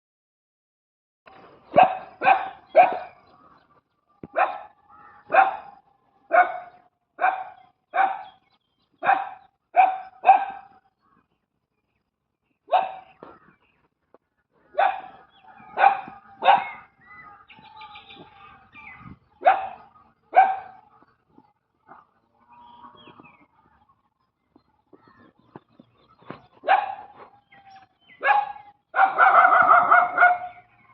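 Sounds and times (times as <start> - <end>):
dogs barking: 1.7 - 3.3, 4.2 - 8.4, 9.0 - 10.8, 12.6 - 13.2, 14.7 - 17.0, 19.4 - 21.2, 21.8 - 22.3, 26.5 - 30.8.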